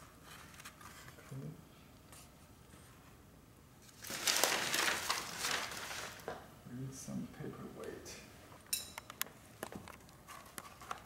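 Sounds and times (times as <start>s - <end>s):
paper rustling and sliding: 3.8s - 6.4s.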